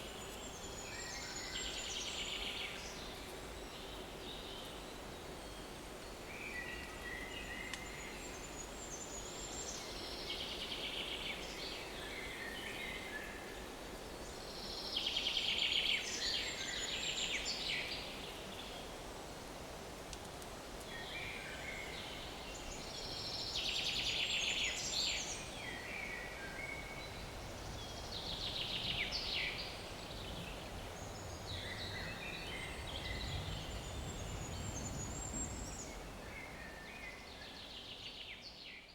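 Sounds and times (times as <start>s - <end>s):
songbirds singing trilled song: 0.0s - 18.9s, 20.9s - 38.9s
faint outdoor background: 0.0s - 38.9s.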